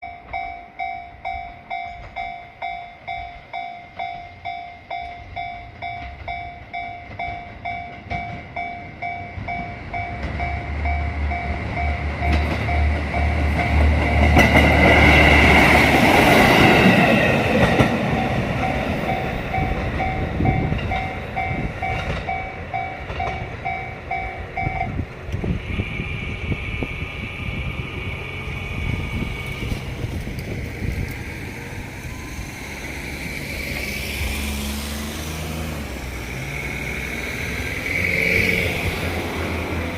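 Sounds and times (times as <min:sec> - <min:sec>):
level crossing alarm ringing: 0:00.0 - 0:29.3
diesel railcar passing: 0:00.0 - 0:39.9.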